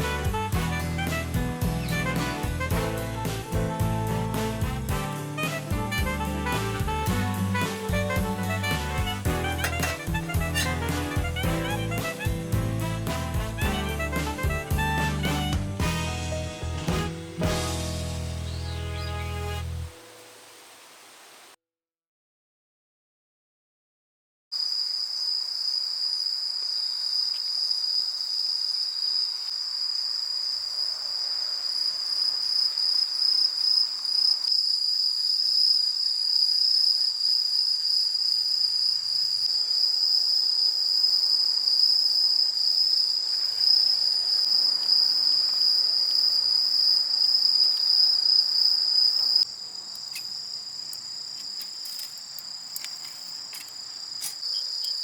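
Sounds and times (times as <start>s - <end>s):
insects trilling: 24.6s - 55.0s
light clicks of handled gear: 49.9s - 55.0s.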